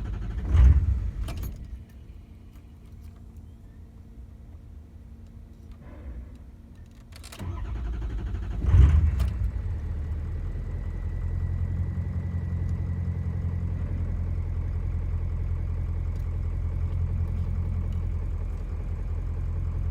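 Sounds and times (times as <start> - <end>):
truck engine starting and idling: 0.0 - 2.2, 5.7 - 19.9.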